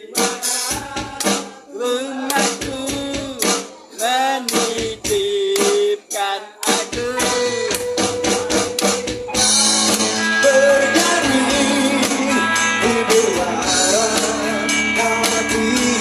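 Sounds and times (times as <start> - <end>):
person singing: 0.0 - 16.0
rock band playing: 6.6 - 16.0.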